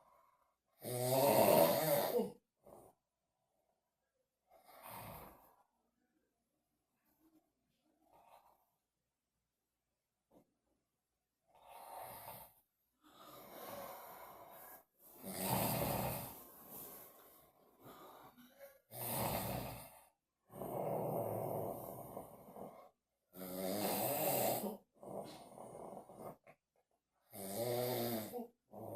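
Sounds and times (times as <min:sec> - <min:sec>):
man snoring: 0:00.8 - 0:02.4, 0:11.5 - 0:17.0, 0:17.8 - 0:26.4, 0:27.3 - 0:28.9.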